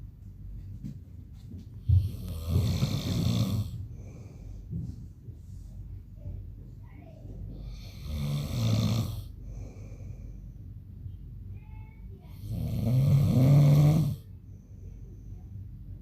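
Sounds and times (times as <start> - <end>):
man breathing quietly: 1.8 - 6.2, 9.2 - 11.1, 14.2 - 15.6
man snoring: 2.0 - 3.8, 7.7 - 9.7, 12.4 - 14.3.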